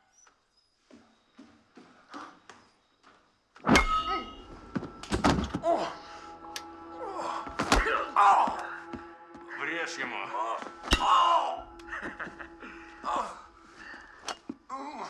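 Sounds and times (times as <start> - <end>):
dramatic music: 3.7 - 14.4.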